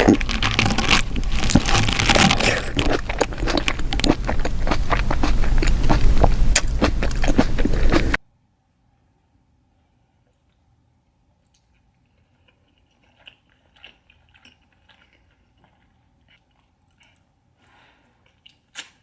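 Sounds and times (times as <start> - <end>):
small clicks and crackles: 0.0 - 5.7
wet chewing and sucking: 0.0 - 8.2, 11.5 - 19.0.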